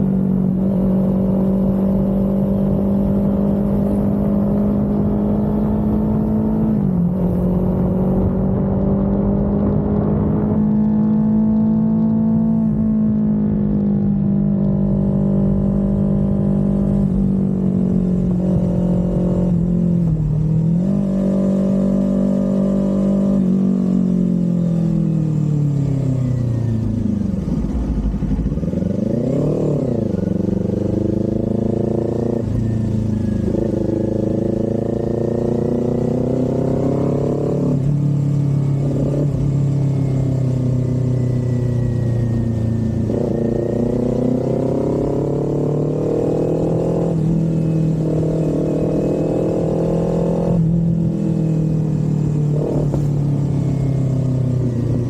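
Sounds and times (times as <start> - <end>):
motorcycle engine and exhaust: 0.0 - 55.0.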